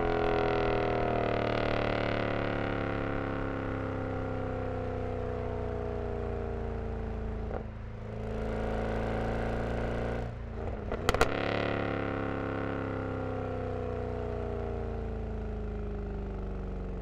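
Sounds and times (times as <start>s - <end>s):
exhaust cracks: 10.9s - 11.4s.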